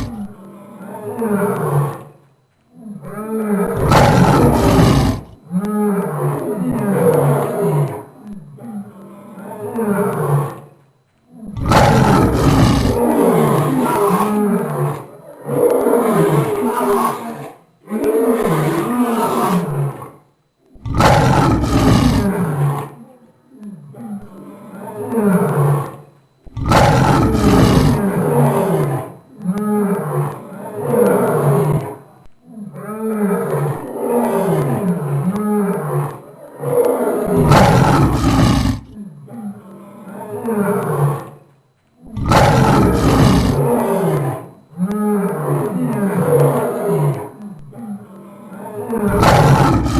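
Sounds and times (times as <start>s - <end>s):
deep beast roar: 0.0s - 2.1s, 3.6s - 5.4s, 11.5s - 14.4s, 20.8s - 22.5s, 26.6s - 29.0s, 36.0s - 39.0s, 42.1s - 47.2s, 48.2s - 49.9s
lion grunting calls: 0.0s - 2.2s, 2.8s - 17.3s, 20.7s - 22.8s, 23.8s - 32.0s, 33.6s - 41.4s, 42.0s - 49.9s
lion roaring: 0.0s - 41.4s, 42.0s - 49.9s.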